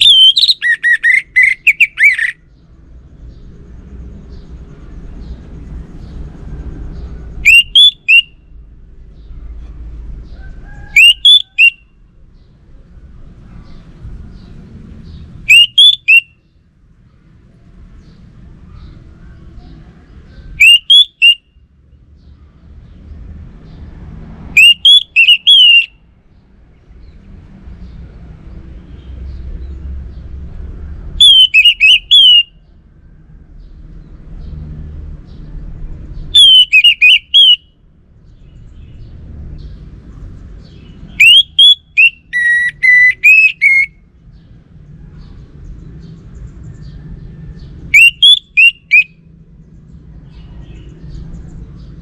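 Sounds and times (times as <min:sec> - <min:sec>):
thrush whistled song: 0:00.0 - 0:02.4, 0:07.4 - 0:08.4, 0:10.7 - 0:11.9, 0:15.4 - 0:16.4, 0:20.6 - 0:21.6, 0:24.5 - 0:26.0, 0:31.2 - 0:32.6, 0:36.3 - 0:37.8, 0:40.7 - 0:44.0, 0:47.9 - 0:49.3.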